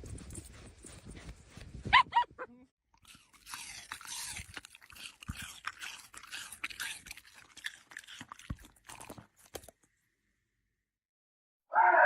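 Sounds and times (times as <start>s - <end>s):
steady crunching: 3.0s - 9.9s.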